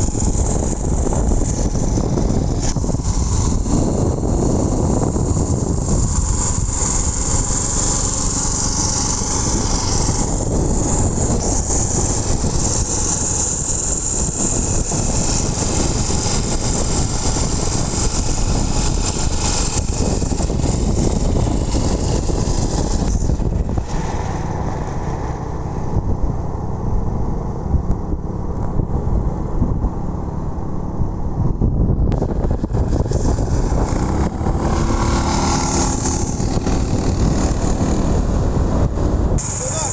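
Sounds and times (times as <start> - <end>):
loud rushing hiss: 0.0 - 24.5, 32.3 - 38.7, 39.3 - 39.9
small generator engine running: 0.0 - 28.4, 32.2 - 39.9.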